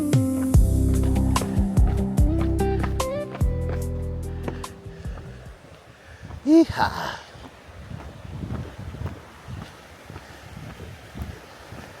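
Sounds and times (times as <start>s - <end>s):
plucked notes over held chord: 0.0s - 4.8s.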